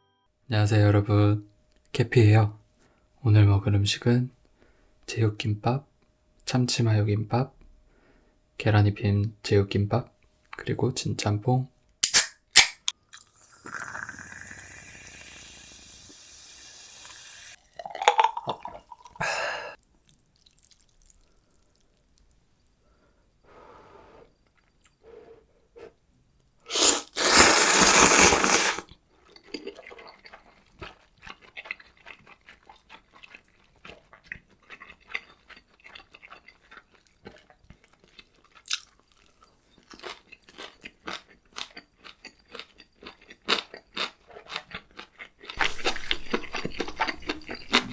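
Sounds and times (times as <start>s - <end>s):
chewing and handling food: 19.8s - 22.8s, 26.8s - 47.9s.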